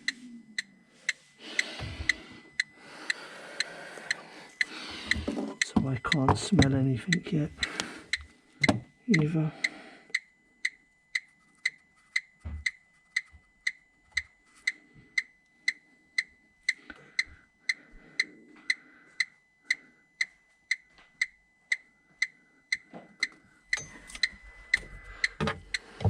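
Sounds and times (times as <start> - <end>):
gas detector beeping clicks: 0.0 - 26.0.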